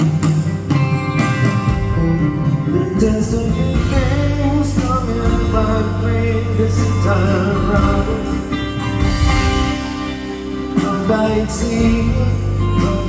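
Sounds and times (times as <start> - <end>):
live folk rock band: 0.0 - 13.0
person singing: 2.2 - 8.8, 10.2 - 13.0.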